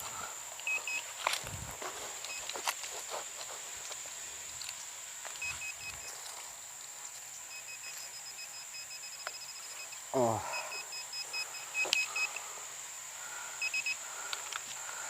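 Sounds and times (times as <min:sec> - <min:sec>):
high-pitched insect drone: 0:00.0 - 0:15.0
short beeps: 0:00.7 - 0:01.0, 0:05.4 - 0:06.1, 0:07.5 - 0:12.3.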